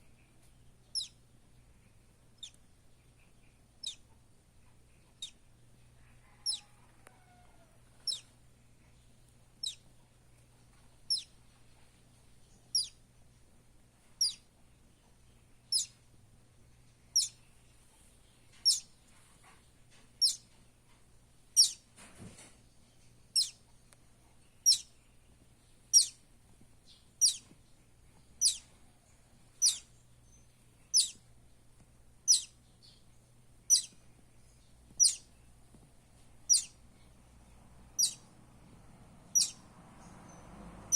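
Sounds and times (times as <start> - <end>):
bird chick peeping: 0.0 - 20.7, 21.5 - 40.9.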